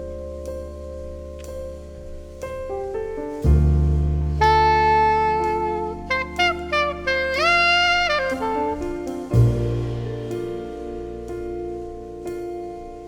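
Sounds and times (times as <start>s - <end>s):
deep bass: 0.0s - 13.0s
lead melody: 3.4s - 13.0s.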